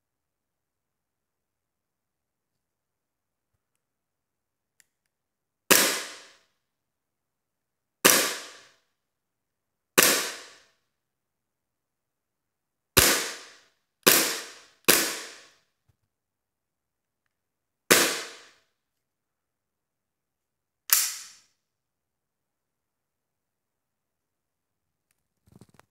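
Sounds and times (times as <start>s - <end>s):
airsoft pistol slide cracks: 20.9s - 21.5s.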